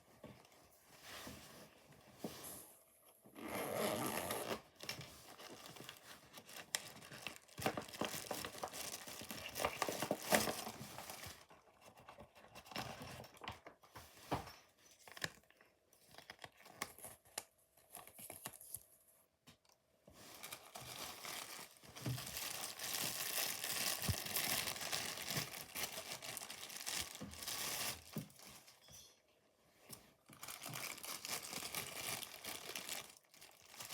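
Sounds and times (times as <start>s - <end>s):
packaging tearing and crinkling: 3.9s - 11.4s, 20.2s - 28.6s, 30.4s - 33.9s.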